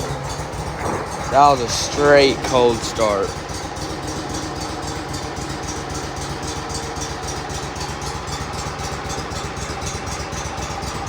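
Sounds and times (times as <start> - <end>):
mower engine idling: 0.0 - 11.0.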